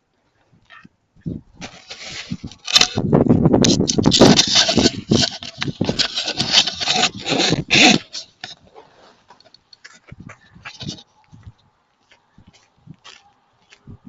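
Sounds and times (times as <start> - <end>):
footsteps crunching in snow: 1.6 - 3.0, 4.1 - 13.9.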